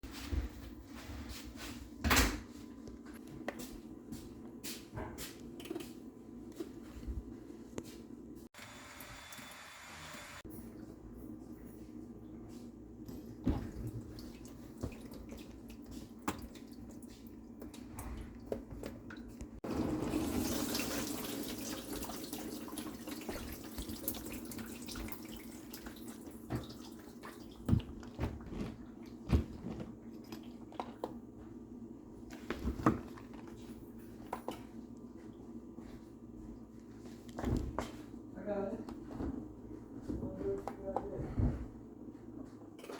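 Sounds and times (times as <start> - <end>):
dishwasher humming: 8.6 - 42.9.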